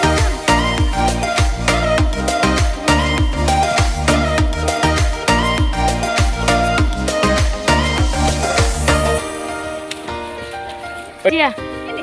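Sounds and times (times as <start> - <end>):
dance music with sliding bass: 0.0 - 9.8.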